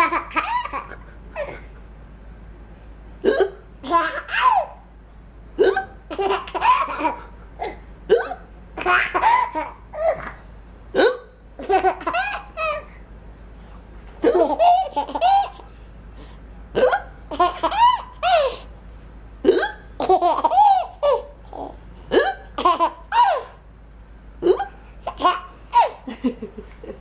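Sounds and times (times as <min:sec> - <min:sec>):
child laughing with hiccups: 0:00.0 - 0:01.7, 0:03.2 - 0:04.8, 0:05.6 - 0:10.4, 0:11.0 - 0:12.9, 0:14.2 - 0:15.7, 0:16.8 - 0:18.7, 0:19.4 - 0:23.6, 0:24.4 - 0:27.0.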